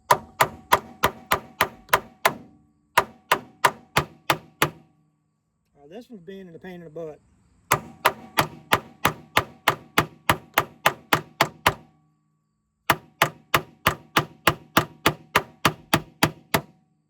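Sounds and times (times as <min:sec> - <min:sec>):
hammer blows on metal: 0:00.0 - 0:04.9, 0:07.7 - 0:11.9, 0:12.9 - 0:16.8.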